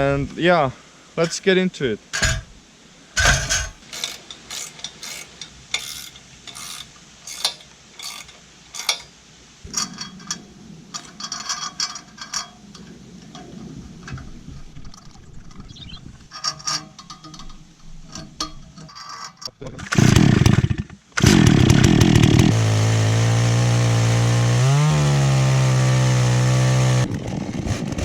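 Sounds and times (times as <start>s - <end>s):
hand ratchet clicking: 3.2s - 9.1s.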